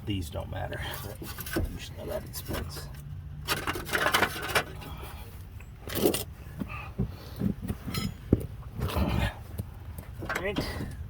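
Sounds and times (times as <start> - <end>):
metal tools clinking and scraping: 0.9 - 5.0, 7.8 - 8.3.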